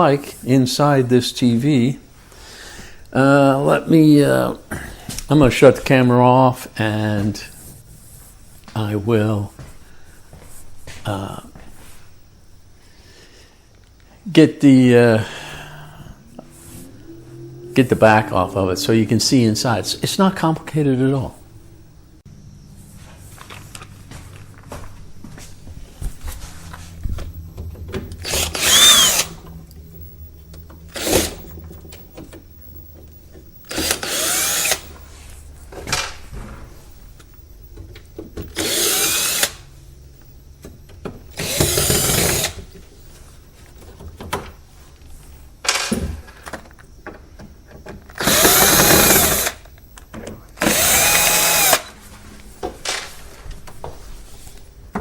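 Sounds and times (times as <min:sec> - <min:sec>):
electric drill whining: 0:26.7 - 0:32.2, 0:33.0 - 0:35.1, 0:38.5 - 0:39.8, 0:41.3 - 0:42.7, 0:48.1 - 0:49.8, 0:50.6 - 0:53.0.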